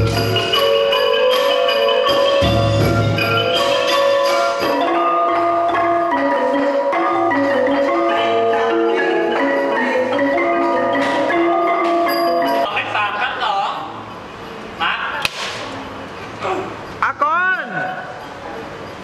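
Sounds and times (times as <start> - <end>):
mallet percussion melody: 0.0 - 12.8.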